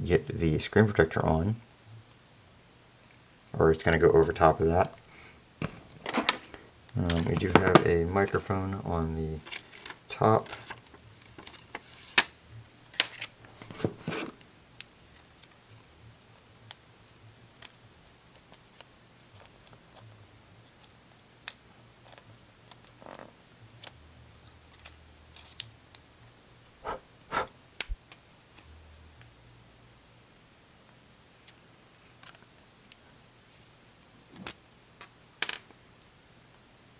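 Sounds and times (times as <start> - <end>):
handling noises: 3.8 - 8.7, 13.4 - 14.4.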